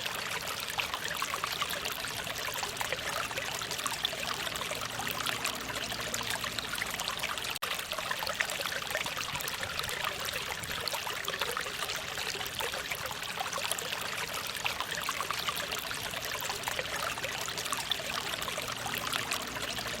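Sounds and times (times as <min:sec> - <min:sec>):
stream flowing over rocks: 0:00.0 - 0:20.0.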